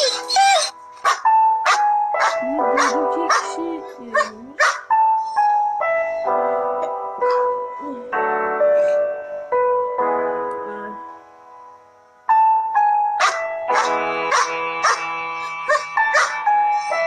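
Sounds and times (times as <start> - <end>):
dog yelping: 0.0 - 5.7, 13.2 - 15.0, 15.6 - 16.4
piano music: 0.0 - 17.0.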